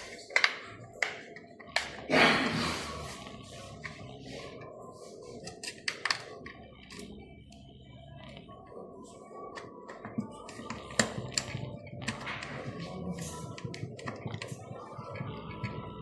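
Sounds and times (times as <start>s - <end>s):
plastic parts clicking and tapping: 0.0s - 2.1s, 5.4s - 7.6s, 9.5s - 15.9s.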